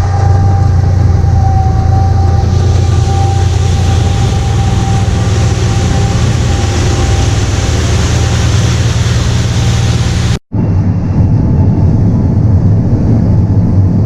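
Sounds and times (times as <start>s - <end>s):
heavy vehicle engine rumble: 0.0s - 10.4s
road noise hiss: 2.0s - 10.4s.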